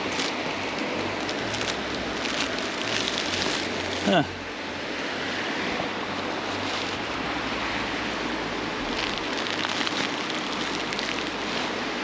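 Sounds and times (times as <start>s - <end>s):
fine crackling ticks: 0.0s - 4.1s
freezing rain hissing: 0.0s - 12.0s.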